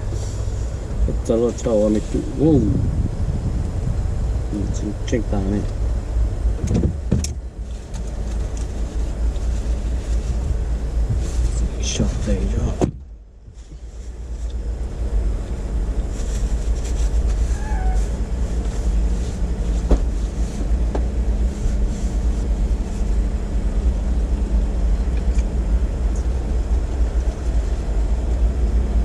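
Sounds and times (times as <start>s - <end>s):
car engine idling: 0.0s - 29.0s.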